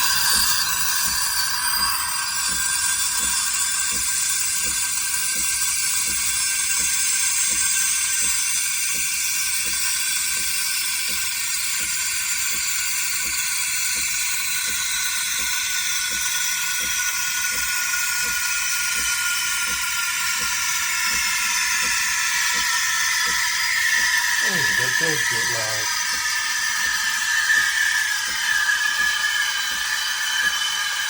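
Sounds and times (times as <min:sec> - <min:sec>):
steam wand hissing: 0:14.4 - 0:31.0.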